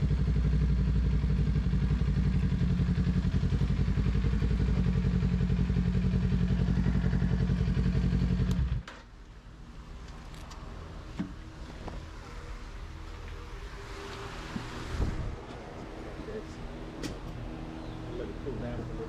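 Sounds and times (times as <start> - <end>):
motorcycle engine idling: 0.0 - 8.8.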